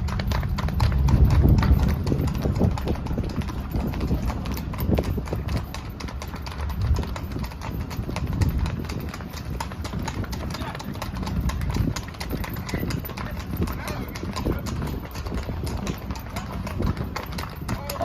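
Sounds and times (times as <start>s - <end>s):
low rumble: 0.0s - 9.2s
horse hooves clip-clopping: 0.0s - 18.0s.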